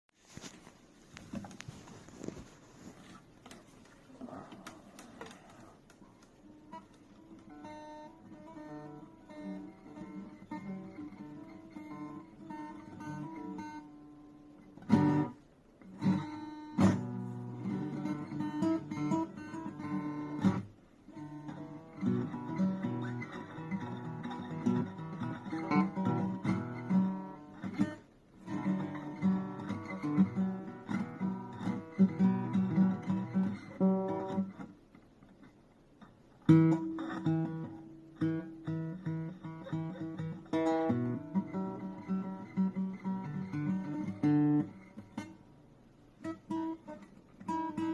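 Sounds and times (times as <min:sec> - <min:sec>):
plucked string instrument playing: 0:06.5 - 0:14.1.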